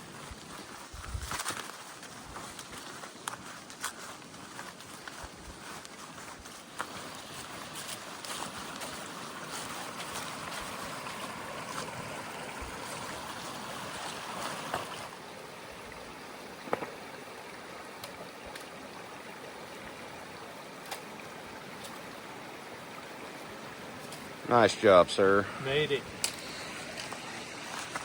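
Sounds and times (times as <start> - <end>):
creek water rushing: 0.0 - 28.0.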